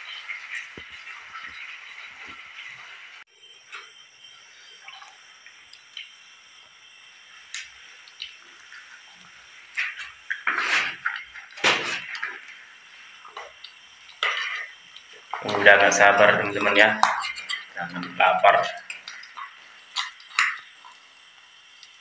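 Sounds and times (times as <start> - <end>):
fire crackles: 0.0 - 22.0
fish frying in a pan: 0.0 - 22.0
utensils scraping and knocking pan: 9.8 - 12.4, 14.2 - 14.7, 15.4 - 20.6.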